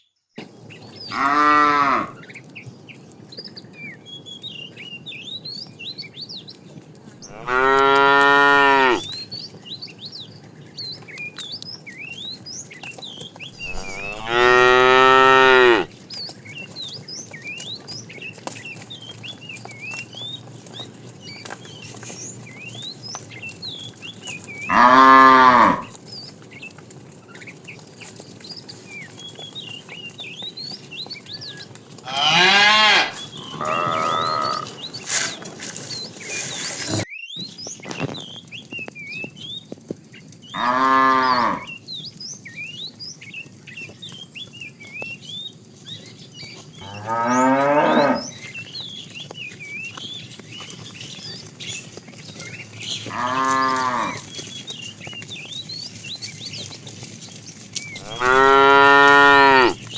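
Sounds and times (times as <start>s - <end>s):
cows mooing: 1.1s - 2.2s, 7.3s - 9.1s, 13.6s - 15.9s, 24.7s - 25.9s, 32.0s - 35.0s, 40.6s - 41.7s, 46.8s - 48.4s, 53.0s - 54.3s, 58.0s - 59.8s.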